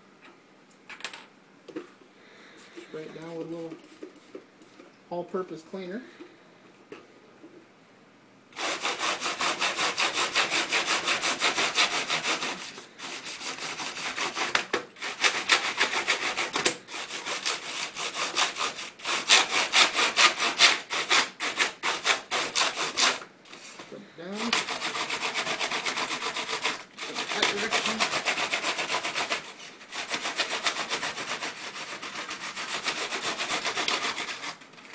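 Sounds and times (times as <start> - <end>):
brush scrubbing keyboard keys: 24.4 - 34.9.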